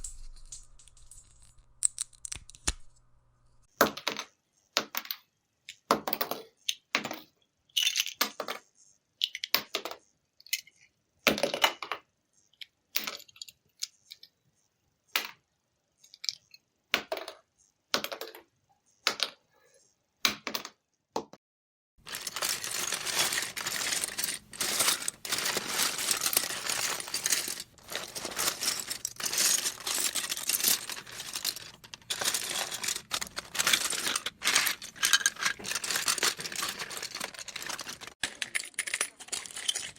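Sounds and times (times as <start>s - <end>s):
bricks rattling together: 22.0s - 39.9s
plastic bricks clicking: 22.0s - 39.9s.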